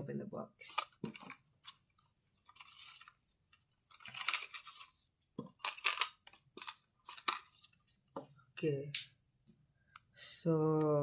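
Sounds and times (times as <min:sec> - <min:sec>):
crinkly packaging rustling: 0:00.6 - 0:08.0.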